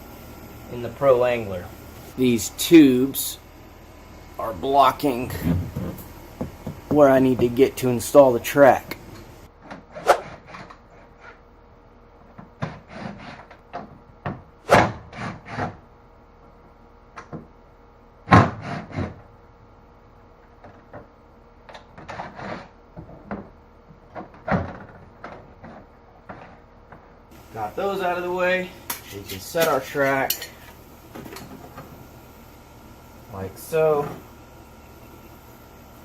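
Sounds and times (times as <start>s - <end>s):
tubes knocking and scraping: 4.6s - 11.4s, 20.6s - 27.2s.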